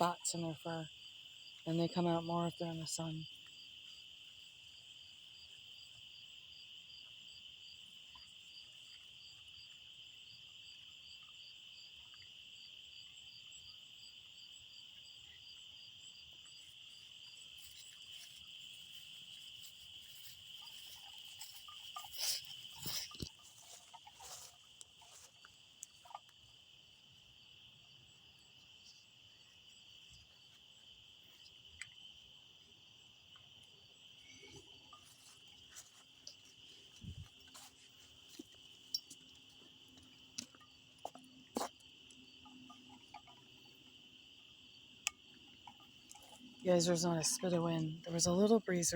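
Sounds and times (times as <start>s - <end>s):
high-pitched insect trill: 0.0s - 48.9s
pulsing insect call: 7.6s - 48.9s
rustles and clicks: 17.6s - 26.2s.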